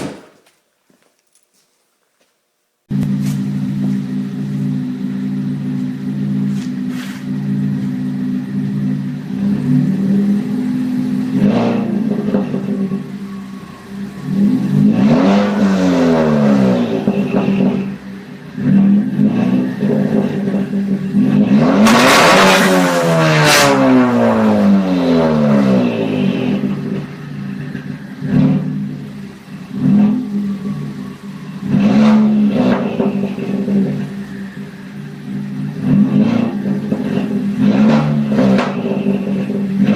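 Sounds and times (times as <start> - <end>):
exhaust pops: 0.0 - 1.5
car engine revving: 2.9 - 39.9.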